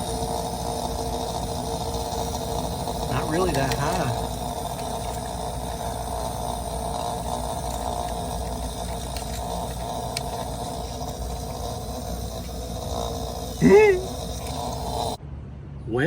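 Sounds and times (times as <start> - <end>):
refrigerator compressor humming: 0.0 - 15.2.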